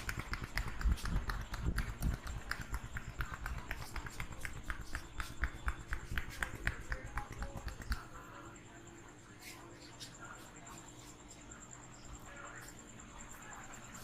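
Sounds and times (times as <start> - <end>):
hands tapping during massage: 0.0 - 8.3.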